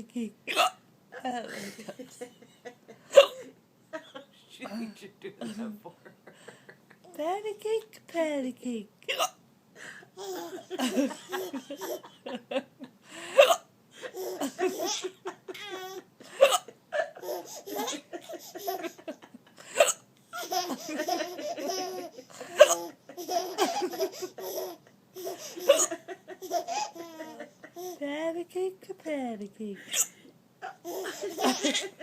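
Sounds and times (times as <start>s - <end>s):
baby laughing and squealing: 17.2s - 18.9s, 20.3s - 28.0s.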